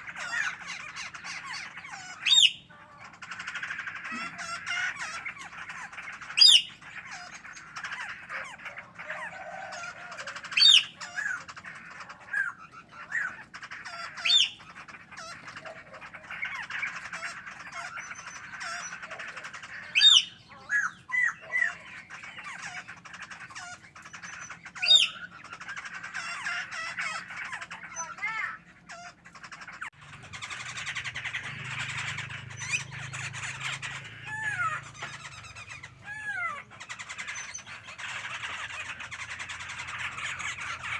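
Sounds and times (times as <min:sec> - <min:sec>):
bird calling sharply: 0:00.0 - 0:08.5
bird twittering: 0:00.0 - 0:40.9.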